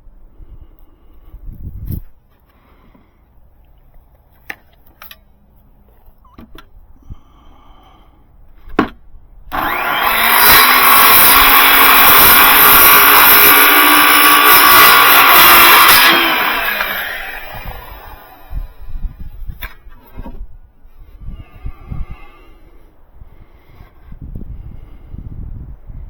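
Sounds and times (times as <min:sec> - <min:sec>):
power saw cutting wood: 0:09.5 - 0:18.8.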